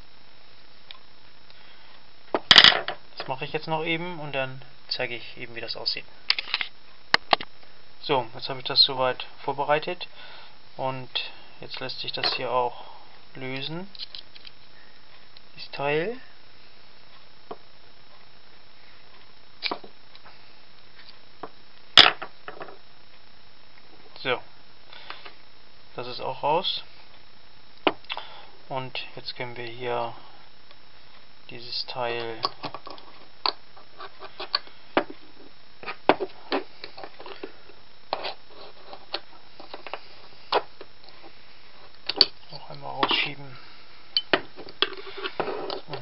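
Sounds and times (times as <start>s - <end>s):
small metal parts clicking: 13.9s - 14.6s.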